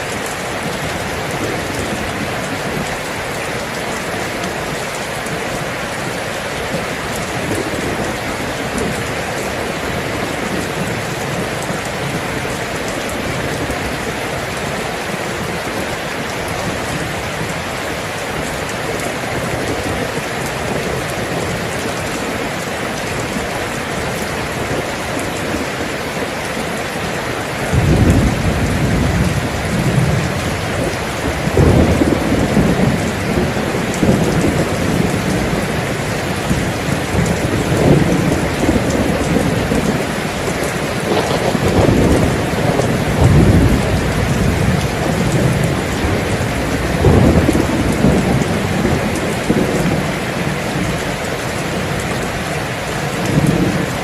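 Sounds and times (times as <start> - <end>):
steady rain falling: 0.0 - 54.0
thunder rumbling: 0.0 - 54.0.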